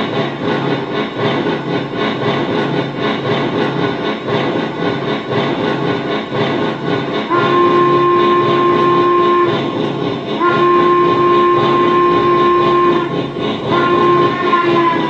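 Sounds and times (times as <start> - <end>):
steam engine working: 0.0 - 15.0
steam whistle blasts: 7.3 - 15.0.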